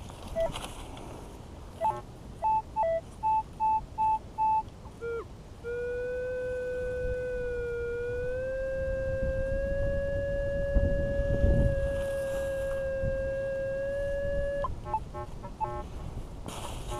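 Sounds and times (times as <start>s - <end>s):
metal detector beeps: 1.8s - 4.6s.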